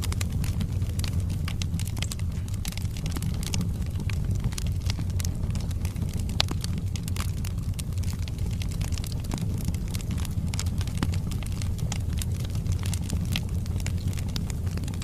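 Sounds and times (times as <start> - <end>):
logs crackling and popping: 0.0 - 15.0
low rumble of flames: 0.0 - 15.0.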